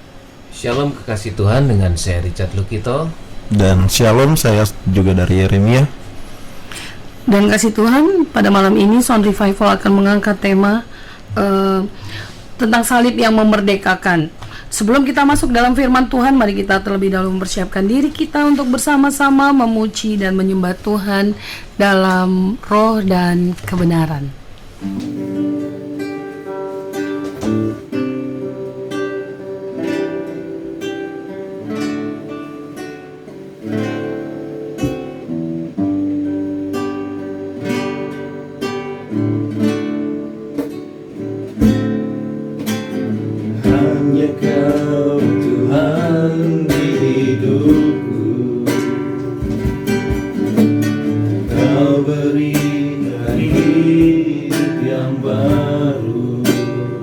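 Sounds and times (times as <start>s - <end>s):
acoustic guitar picking and strumming: 3.2s - 57.0s
person singing: 43.6s - 49.7s, 51.4s - 57.0s.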